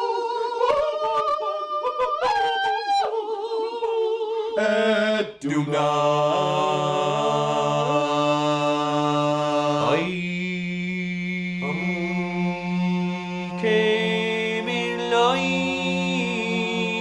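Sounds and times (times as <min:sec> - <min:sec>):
men singing unaccompanied: 0:04.6 - 0:17.0.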